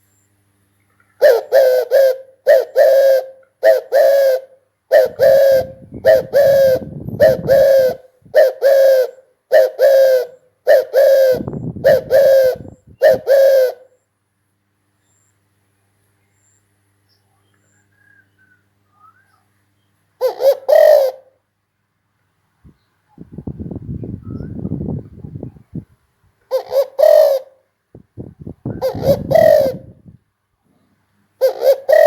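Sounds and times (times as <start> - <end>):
dove cooing: 1.2 - 14.0, 20.2 - 21.4, 26.5 - 27.6, 28.2 - 30.2, 31.4 - 32.0.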